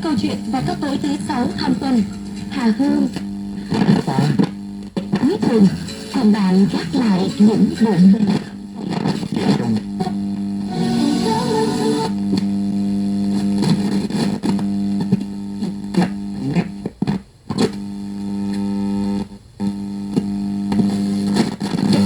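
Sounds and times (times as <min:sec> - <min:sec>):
radio speaker hum: 0:00.0 - 0:22.0
crackling clicks: 0:02.1 - 0:05.4, 0:20.1 - 0:22.0.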